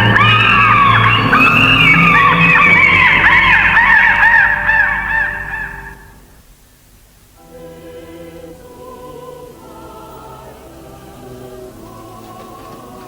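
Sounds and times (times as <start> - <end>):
choir singing held chords: 0.0 - 6.4, 7.2 - 13.0
loud honking cries: 0.0 - 6.4.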